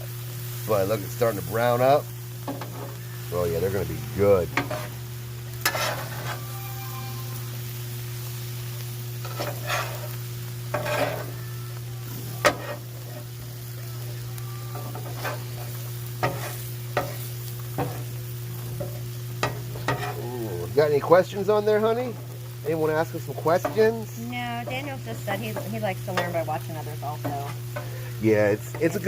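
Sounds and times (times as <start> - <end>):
bacon sizzling on a griddle: 0.0 - 29.0
metal spatula scraping steel: 4.5 - 5.0, 5.6 - 7.4, 9.2 - 11.4, 12.1 - 13.6, 14.7 - 20.2.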